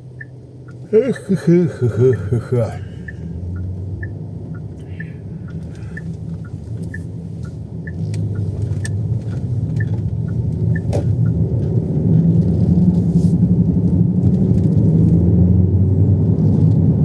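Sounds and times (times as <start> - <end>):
turn signal ticking: 0.0 - 13.1
car engine and road noise: 0.0 - 17.0.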